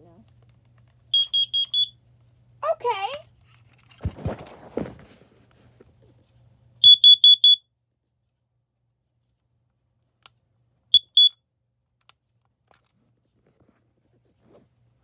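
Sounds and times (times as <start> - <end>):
high-pitched alarm beeps: 1.2 - 1.9, 6.8 - 7.6, 11.0 - 11.3.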